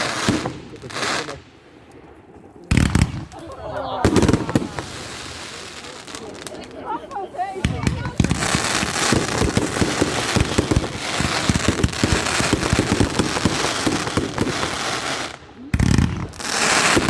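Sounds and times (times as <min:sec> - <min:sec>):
firework battery cracks and bangs: 0:02.0 - 0:06.6.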